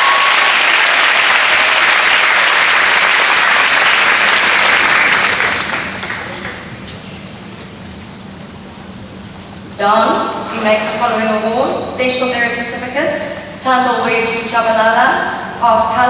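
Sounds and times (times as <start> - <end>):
large audience clapping: 0.0 - 6.8.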